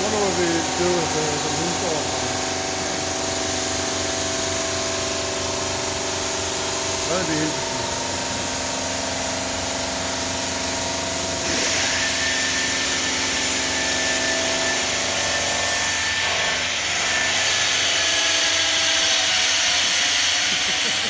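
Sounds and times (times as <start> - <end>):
water spray hissing: 0.0 - 12.8
saw machine hum: 0.0 - 21.0.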